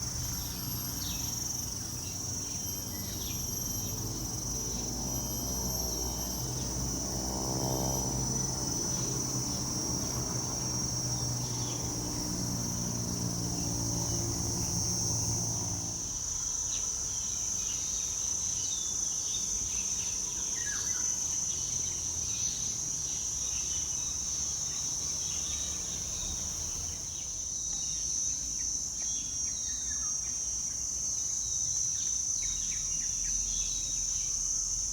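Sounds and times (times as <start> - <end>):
insects droning: 0.0 - 34.9
faint bird chirps: 0.2 - 6.7.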